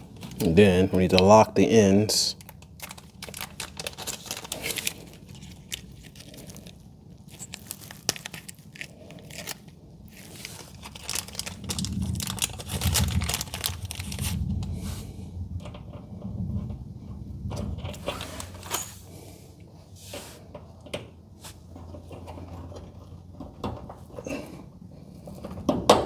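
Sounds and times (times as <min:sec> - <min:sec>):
heavy low rumbling: 0:09.8 - 0:19.6.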